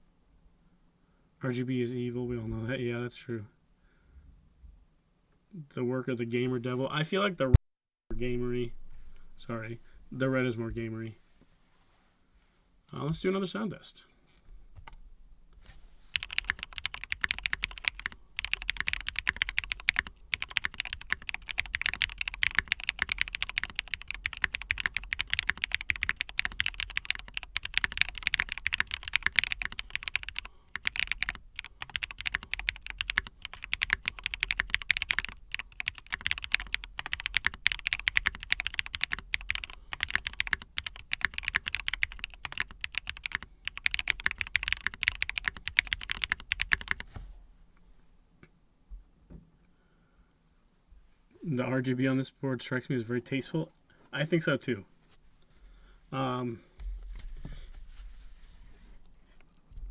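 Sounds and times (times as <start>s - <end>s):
fast typing on mechanical keyboard: 16.1s - 47.1s.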